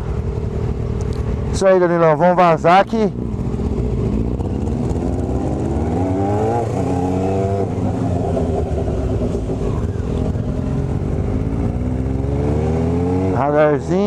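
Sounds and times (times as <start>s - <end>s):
motorcycle engine pulling away: 3.1s - 13.8s.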